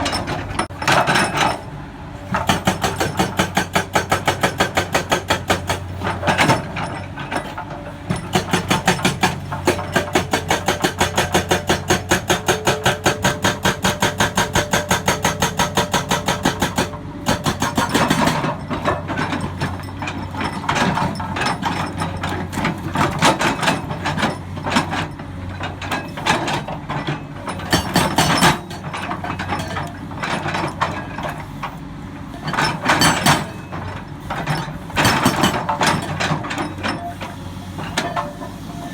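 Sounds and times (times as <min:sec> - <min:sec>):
hydraulic breaker hammering rock: 0:02.3 - 0:31.5, 0:32.3 - 0:38.9.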